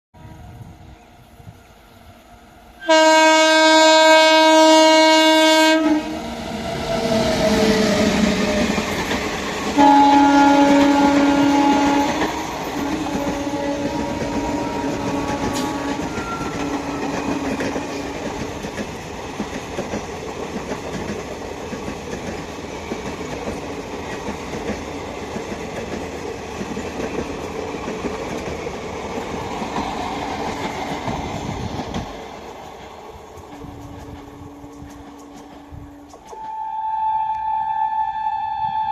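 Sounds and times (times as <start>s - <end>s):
train wheels on track: 0.2s - 36.7s
locomotive horn blast: 2.8s - 6.3s, 9.8s - 18.2s, 36.3s - 38.9s.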